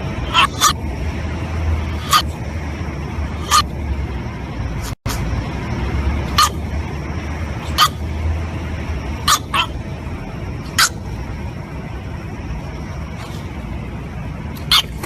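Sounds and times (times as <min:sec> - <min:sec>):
steady background noise: 0:00.0 - 0:15.0
puppy yapping: 0:00.2 - 0:00.8, 0:01.9 - 0:02.5, 0:03.3 - 0:03.7, 0:06.3 - 0:06.7, 0:07.6 - 0:08.2, 0:09.2 - 0:09.9, 0:10.6 - 0:11.2, 0:14.5 - 0:15.0.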